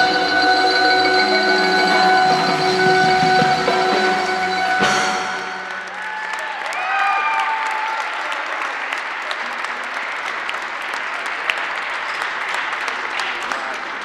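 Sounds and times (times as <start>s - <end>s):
held chord notes: 0.0s - 6.0s
audience applauding: 0.0s - 14.0s.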